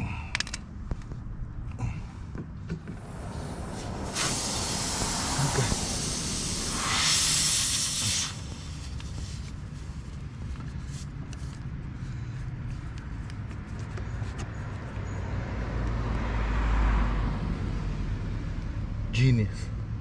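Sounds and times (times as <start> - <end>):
low rumble: 2.8 - 9.0
air hissing from tire: 2.8 - 9.9.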